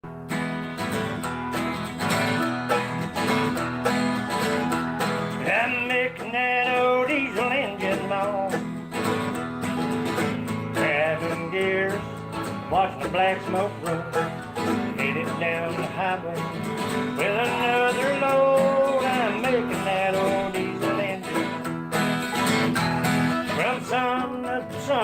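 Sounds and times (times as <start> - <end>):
country song with guitar: 0.0 - 25.0
person singing: 5.3 - 21.8, 23.3 - 25.0.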